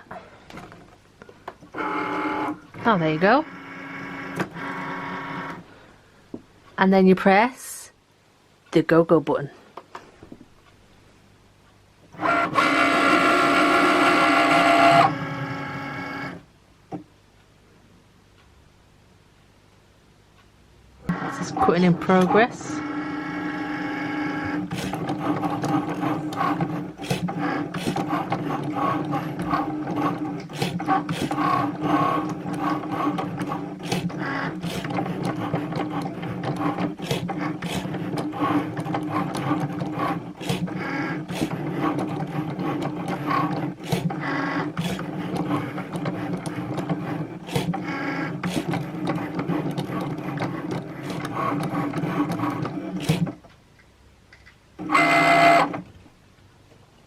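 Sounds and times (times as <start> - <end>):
cutting machine motors whining: 12.2 - 16.4.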